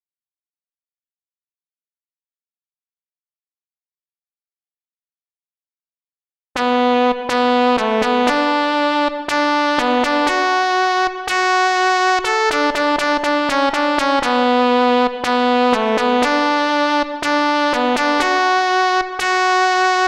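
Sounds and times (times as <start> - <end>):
synth keyboard melody: 6.6 - 20.0.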